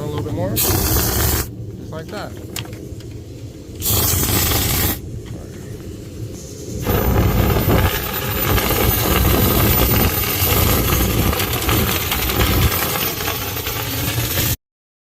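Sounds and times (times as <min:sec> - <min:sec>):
vent cleaning tool whining: 0:06.8 - 0:14.6.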